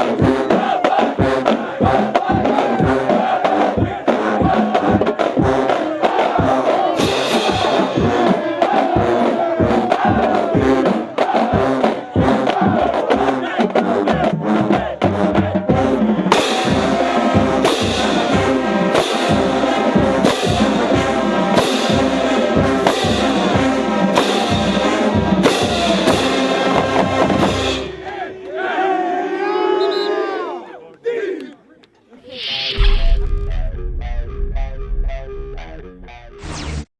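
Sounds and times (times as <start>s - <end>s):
marching band playing: 0.0s - 28.4s
cymbal crashes: 16.3s - 28.0s
voices shouting: 23.2s - 32.3s.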